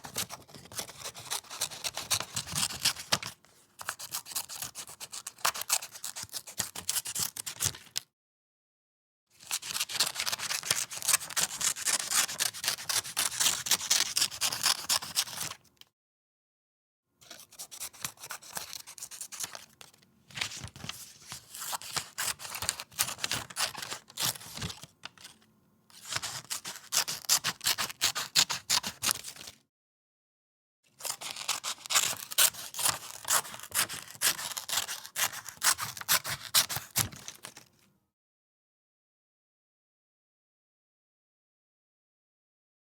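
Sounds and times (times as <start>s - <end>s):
scissors snipping paper: 0.0s - 8.0s, 9.6s - 15.6s, 20.6s - 25.3s, 26.0s - 29.5s, 31.0s - 37.7s.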